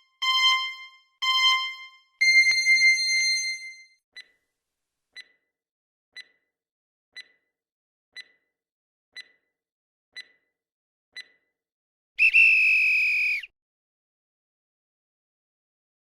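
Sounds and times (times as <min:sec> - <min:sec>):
countdown timer ticking: 0:00.0 - 0:04.4, 0:06.2 - 0:06.4, 0:07.2 - 0:07.5, 0:08.2 - 0:08.5, 0:09.2 - 0:09.5, 0:10.2 - 0:10.6, 0:11.2 - 0:11.5.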